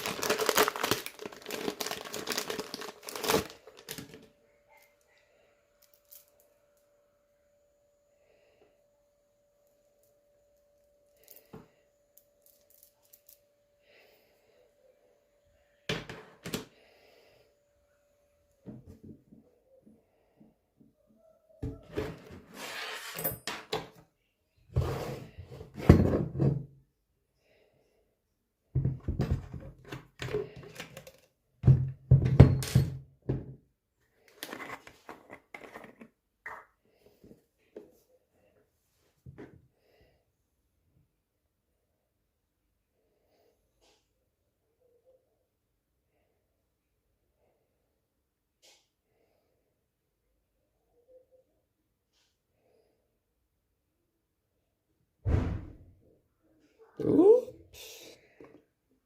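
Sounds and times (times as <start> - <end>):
faint steady hum: 0.0 - 21.3.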